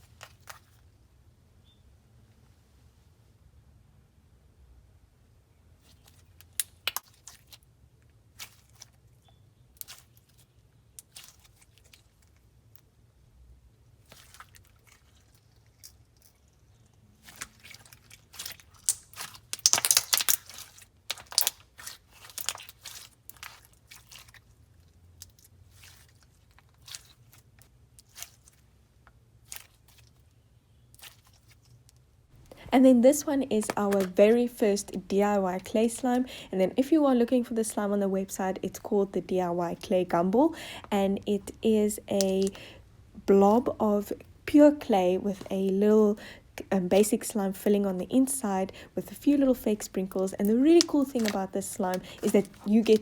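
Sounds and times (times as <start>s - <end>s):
slime squished by hand: 5.8s - 7.7s, 14.0s - 28.6s, 29.4s - 34.2s, 49.8s - 53.0s.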